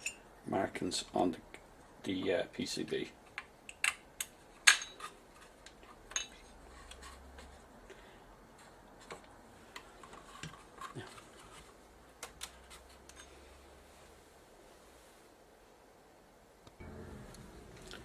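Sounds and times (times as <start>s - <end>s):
small parts clicking and tapping: 3.2s - 7.0s.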